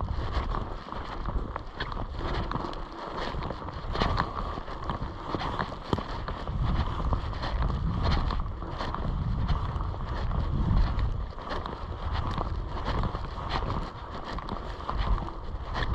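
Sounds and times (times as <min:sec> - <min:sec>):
wind buffeting microphone: 0:00.0 - 0:15.9.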